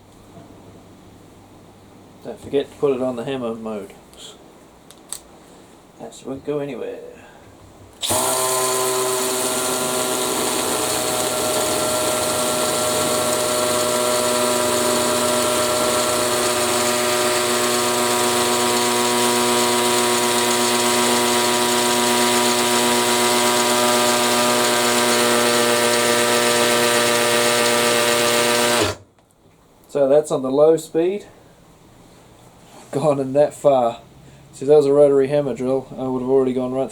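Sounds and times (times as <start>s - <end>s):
hammer drill into cinder block: 8.0s - 29.0s.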